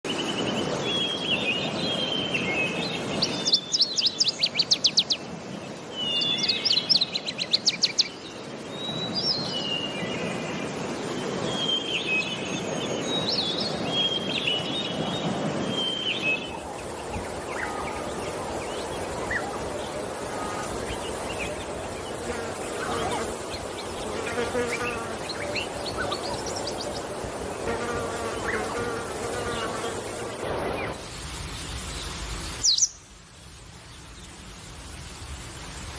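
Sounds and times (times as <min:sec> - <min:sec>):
birds warbling: 0:14.9 - 0:31.0.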